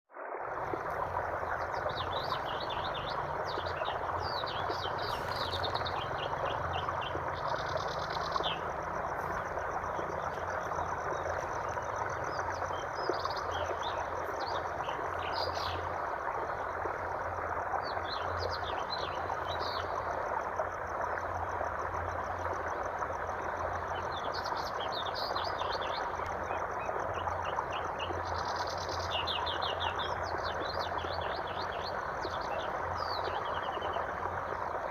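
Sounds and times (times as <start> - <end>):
flowing water rushing: 0.1 - 34.9
small birds chirping: 1.5 - 8.6.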